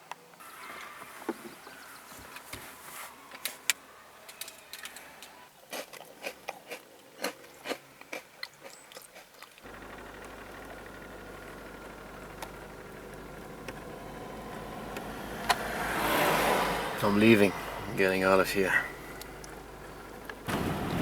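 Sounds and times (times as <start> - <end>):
person chewing crackers: 4.6 - 9.7
car engine idling: 9.6 - 21.0.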